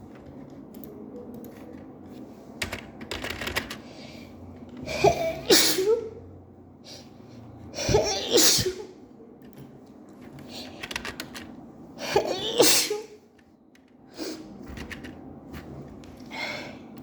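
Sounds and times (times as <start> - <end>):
woman sneezing: 4.9 - 6.2, 7.8 - 8.9, 12.0 - 13.2.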